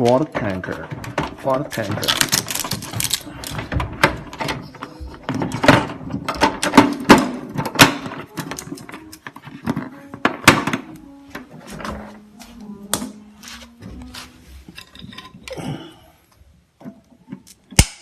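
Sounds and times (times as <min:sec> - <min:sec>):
plastic parts clicking and knocking: 0:00.0 - 0:12.1.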